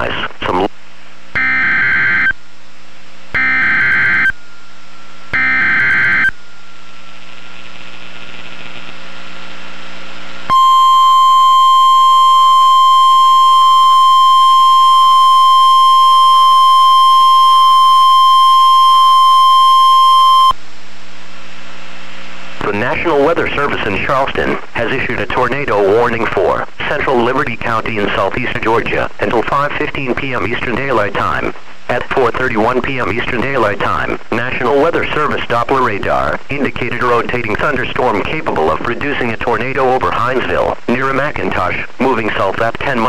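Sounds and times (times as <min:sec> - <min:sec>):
steady alarm tone: 0:01.3 - 0:02.4, 0:03.3 - 0:06.7, 0:10.5 - 0:20.6.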